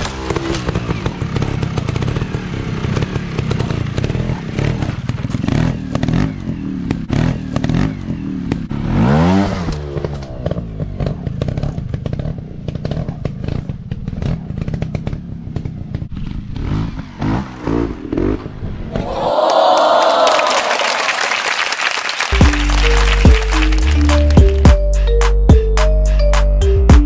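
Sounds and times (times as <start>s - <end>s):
dirt bike engine revving: 0.0s - 19.1s.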